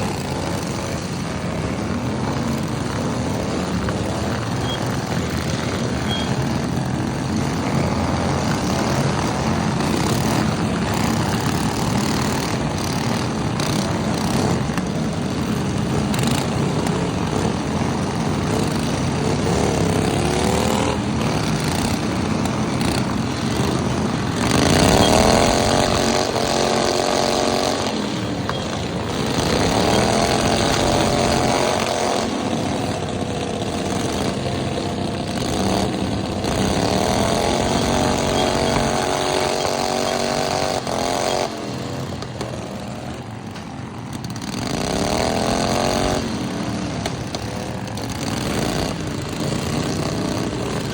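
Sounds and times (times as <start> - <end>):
riding lawn mower engines revving: 0.0 - 50.9.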